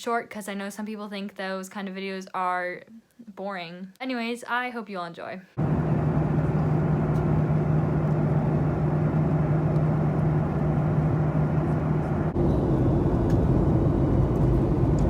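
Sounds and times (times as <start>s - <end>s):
continuous rumbling noise: 5.6s - 15.0s
engine hum: 5.6s - 15.0s.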